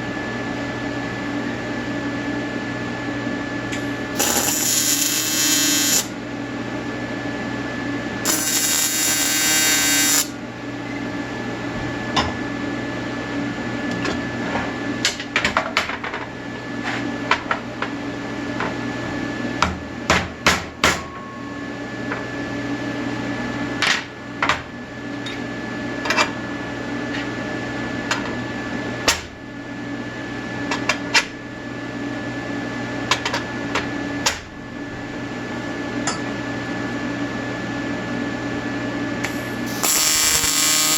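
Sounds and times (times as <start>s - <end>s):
steady hum: 3.4s - 6.9s, 7.7s - 11.6s, 39.2s - 40.9s
welding arc buzz: 3.7s - 6.2s, 8.2s - 10.5s, 39.2s - 40.9s.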